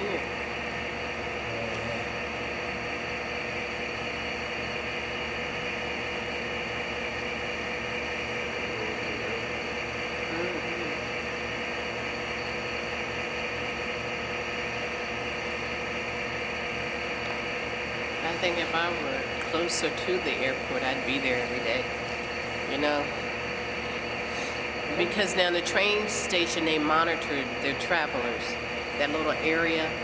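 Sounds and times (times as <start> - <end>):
subway car hum and hiss: 17.1 - 30.0.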